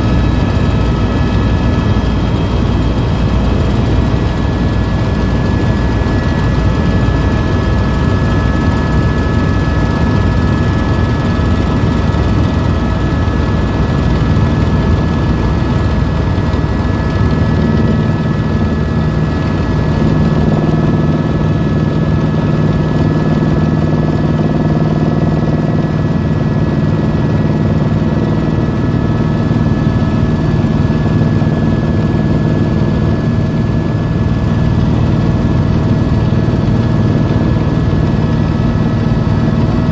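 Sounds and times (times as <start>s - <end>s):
helicopter turbine and rotor drone: 0.0s - 39.9s.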